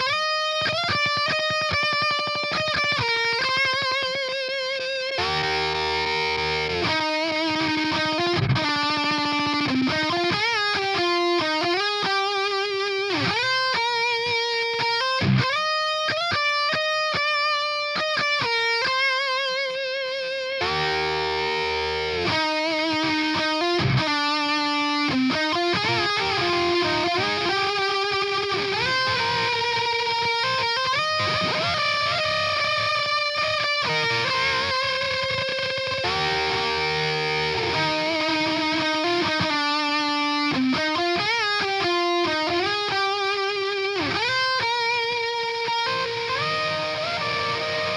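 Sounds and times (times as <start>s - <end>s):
distorted electric guitar melody: 0.0s - 47.9s.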